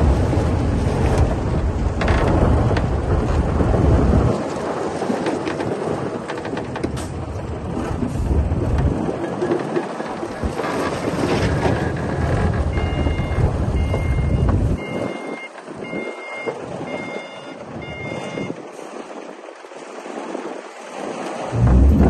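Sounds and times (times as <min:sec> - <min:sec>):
bulldozer diesel engine running: 0:11.8 - 0:18.4, 0:21.6 - 0:22.0
reversing alarm beeps: 0:12.7 - 0:18.6.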